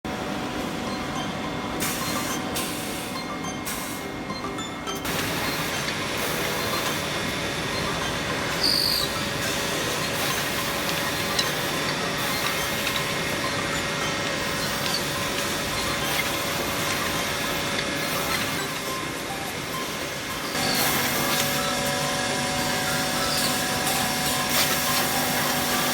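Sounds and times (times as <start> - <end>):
wood drilling machine whirring: 20.5 - 25.9.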